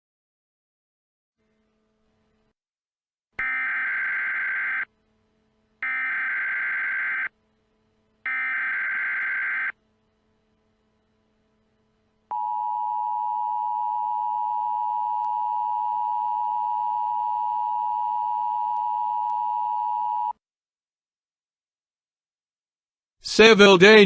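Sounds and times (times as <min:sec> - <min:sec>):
steady two-tone alarm: 0:03.4 - 0:04.9, 0:05.8 - 0:07.3, 0:08.2 - 0:09.8, 0:12.3 - 0:20.3.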